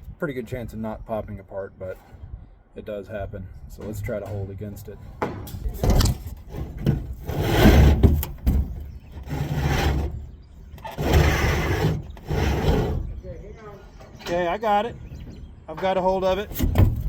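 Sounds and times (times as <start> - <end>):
sheet metal duct scraping: 5.7 - 13.4.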